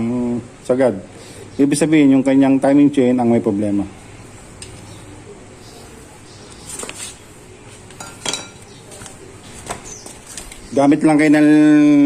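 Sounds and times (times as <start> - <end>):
metal tools clinking: 8.0 - 8.7.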